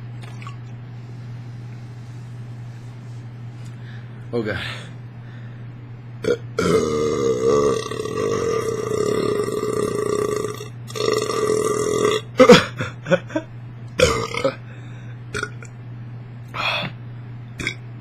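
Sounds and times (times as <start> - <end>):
man burping: 6.2 - 13.0, 14.0 - 14.7, 15.3 - 15.7, 17.6 - 17.8.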